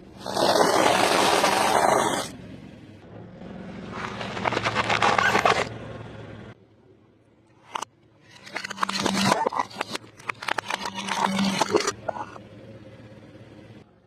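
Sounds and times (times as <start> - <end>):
low engine hum: 2.3 - 8.0, 11.9 - 14.0
car crushing crunchy objects: 3.8 - 5.7.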